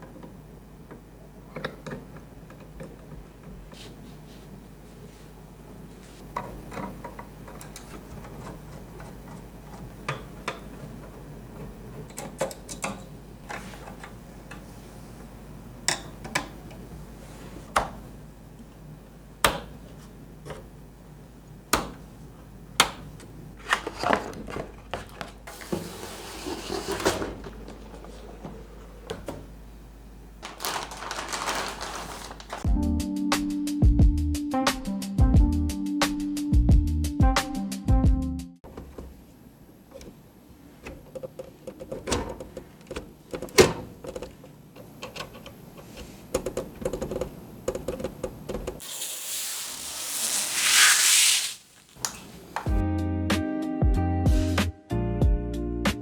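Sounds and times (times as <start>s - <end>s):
brief rustling: 48.8s - 52.4s.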